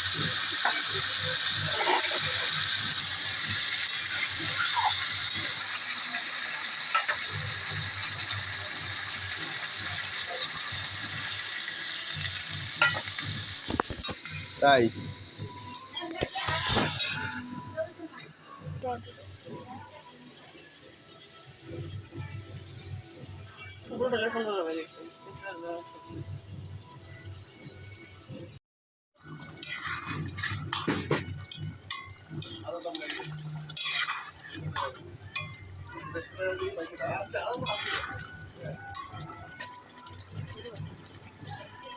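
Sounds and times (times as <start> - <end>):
chicken sizzling in hot oil: 0.0 - 28.5, 29.2 - 41.9
kitchenware clinking: 0.2 - 5.6, 6.9 - 7.8, 12.8 - 14.5, 15.4 - 18.4, 29.4 - 41.0
spoon scraping in a pot: 0.6 - 5.6, 15.6 - 18.4, 29.3 - 36.0, 36.6 - 40.0.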